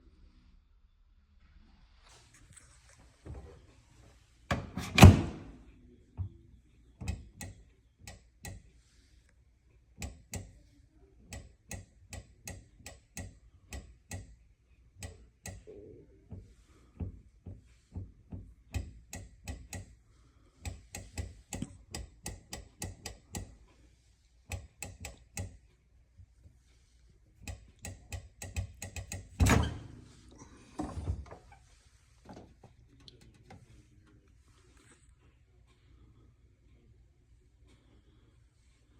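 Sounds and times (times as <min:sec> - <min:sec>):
microwave door latch clicks: 0:04.5 - 0:05.5
microwave door thunk: 0:04.5 - 0:05.5.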